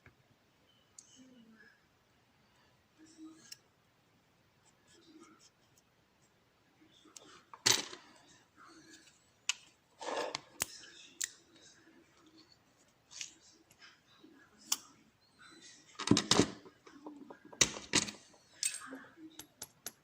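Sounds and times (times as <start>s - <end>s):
lock parts clicking and clinking: 16.0s - 20.0s.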